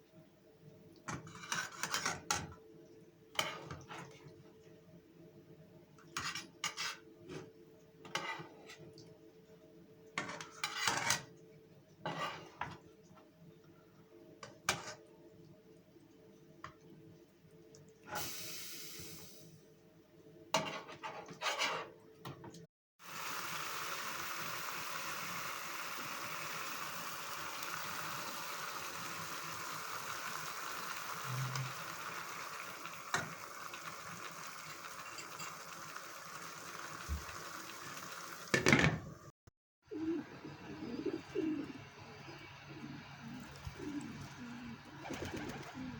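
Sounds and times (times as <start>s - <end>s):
food sizzling in a pan: 18.2s - 19.6s, 23.0s - 38.7s
short hiss: 18.2s - 19.6s
utensils and dishes clinking: 34.6s - 36.0s.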